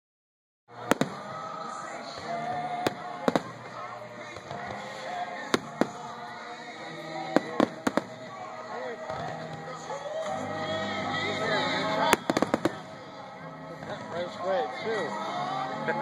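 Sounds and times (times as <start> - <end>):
background music: 0.7 - 16.0
fireworks bangs: 0.8 - 6.3, 7.2 - 8.5, 12.0 - 13.0.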